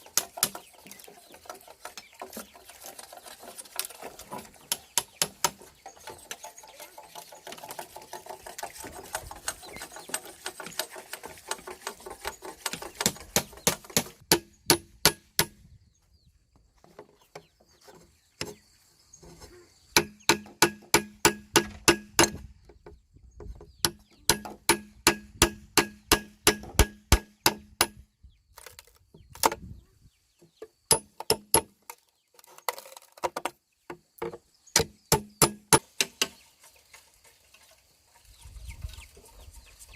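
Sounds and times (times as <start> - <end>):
bamboo being struck: 4.7 - 5.6, 12.6 - 15.6, 20.0 - 22.5, 23.9 - 28.0, 30.9 - 31.8, 34.8 - 36.4.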